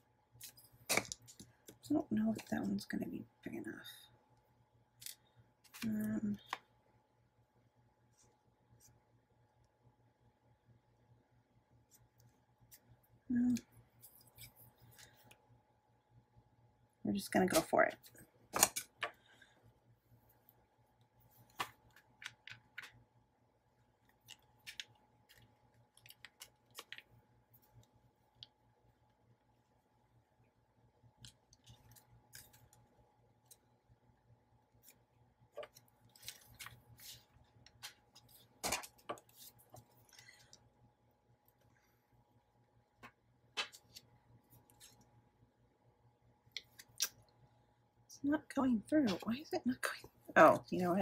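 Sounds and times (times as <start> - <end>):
paper handling: 35.6 - 40.6.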